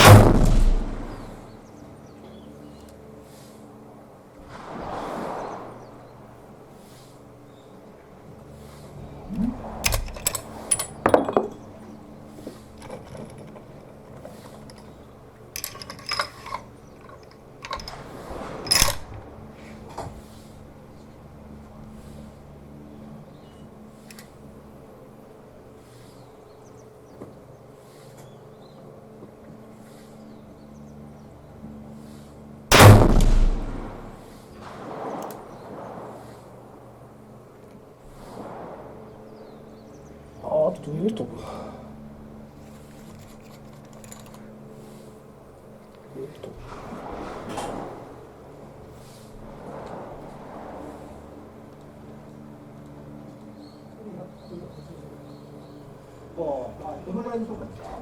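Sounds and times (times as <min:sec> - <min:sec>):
rifle shot: 0:00.0 - 0:01.5, 0:32.7 - 0:34.3
rifle bolt metallic clacks: 0:09.4 - 0:11.7, 0:15.6 - 0:19.3, 0:32.7 - 0:34.2.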